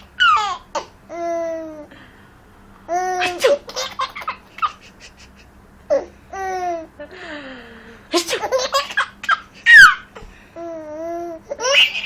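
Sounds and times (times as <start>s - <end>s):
baby laughing: 0.0s - 1.7s, 2.9s - 6.9s, 8.2s - 10.1s, 10.7s - 12.0s.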